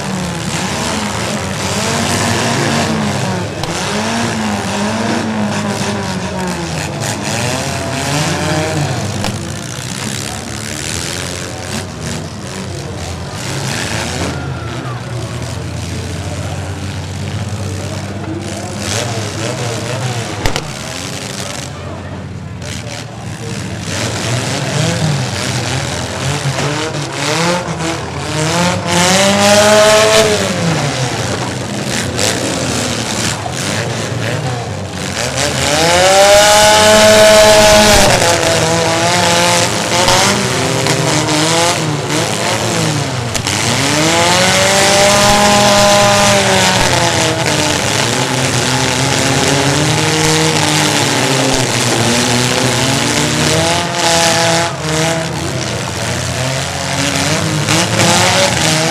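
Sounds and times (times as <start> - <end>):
car engines revving hard: 0.0 - 58.9
tire squeal: 13.4 - 15.5.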